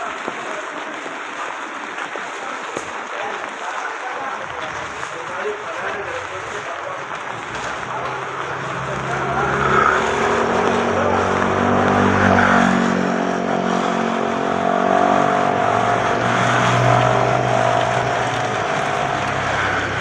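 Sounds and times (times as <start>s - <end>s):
road noise hiss: 0.0s - 20.0s
vehicle engine humming: 5.5s - 20.0s.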